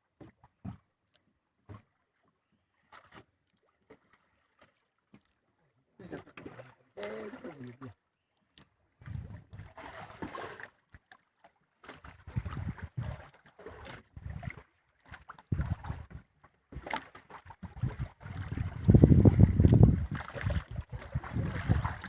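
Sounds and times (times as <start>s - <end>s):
water noise: 0.0s - 22.0s
wind gusts: 17.8s - 22.0s.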